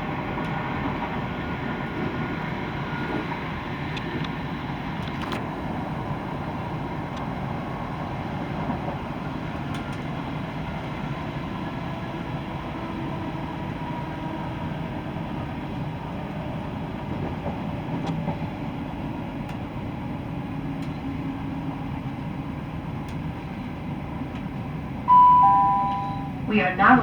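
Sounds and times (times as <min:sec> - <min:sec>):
train engine and wheels rumbling: 0:00.0 - 0:27.0
two-tone announcement chime: 0:25.1 - 0:27.0.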